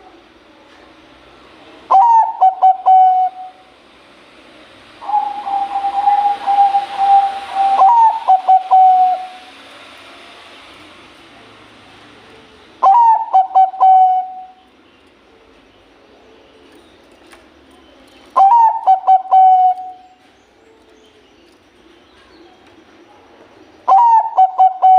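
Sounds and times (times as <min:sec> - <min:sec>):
dove cooing: 0:01.9 - 0:03.6, 0:05.0 - 0:09.4, 0:12.8 - 0:14.6, 0:18.4 - 0:20.1, 0:23.9 - 0:24.9.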